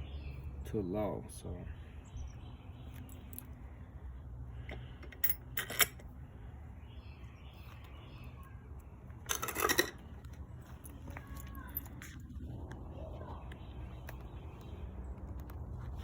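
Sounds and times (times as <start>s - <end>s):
metal parts clinking and rattling: 4.6s - 6.1s, 9.2s - 12.2s.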